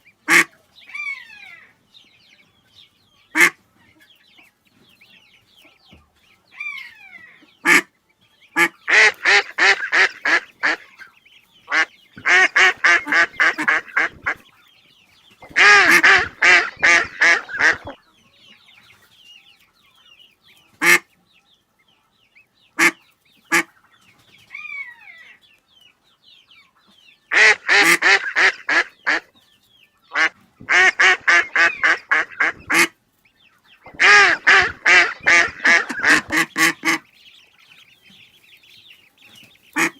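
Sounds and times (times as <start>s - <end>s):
ducks quacking: 0.0s - 1.7s, 3.2s - 4.4s, 6.5s - 18.0s, 20.7s - 21.2s, 22.7s - 25.4s, 27.3s - 29.4s, 30.0s - 39.9s.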